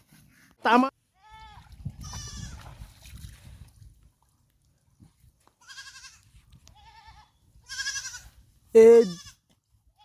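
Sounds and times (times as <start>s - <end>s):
sheep bleating: 5.6s - 6.2s, 6.8s - 8.3s.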